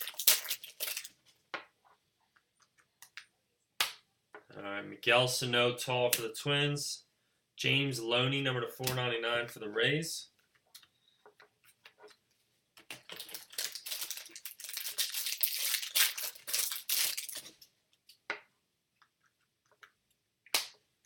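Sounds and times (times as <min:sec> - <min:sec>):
foil wrapper tearing and crinkling: 0:00.0 - 0:01.2, 0:12.9 - 0:17.6.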